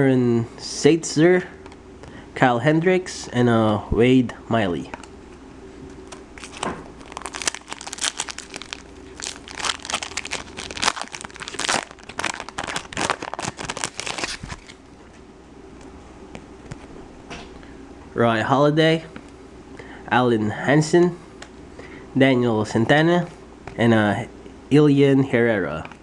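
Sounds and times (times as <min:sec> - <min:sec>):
foil wrapper crinkling and tearing: 0:06.0 - 0:14.9.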